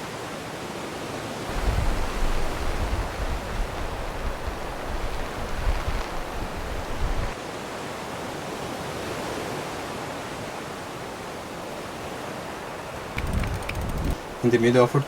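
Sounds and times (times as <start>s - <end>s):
rushing water: 0.0s - 15.0s
wind gusts on microphone: 1.5s - 7.4s, 11.4s - 14.7s.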